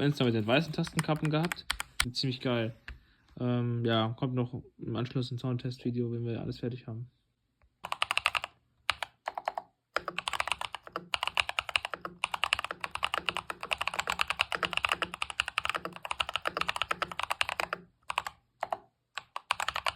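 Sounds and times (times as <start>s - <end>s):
fast typing on mechanical keyboard: 0.0s - 2.1s, 7.8s - 19.9s.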